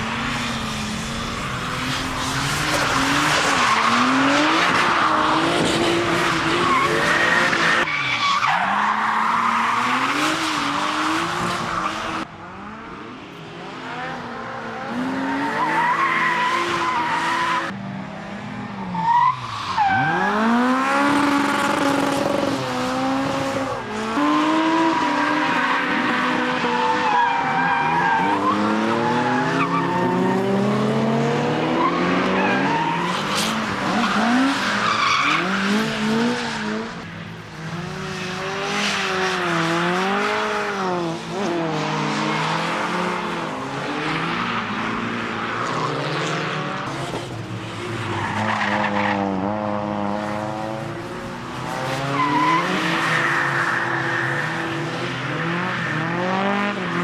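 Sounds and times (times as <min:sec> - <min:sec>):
tyres squealing in drifts: 0:00.0 - 0:12.2, 0:15.0 - 0:17.7, 0:19.0 - 0:41.0, 0:51.6 - 0:57.0
car engines revving hard: 0:19.9 - 0:57.0.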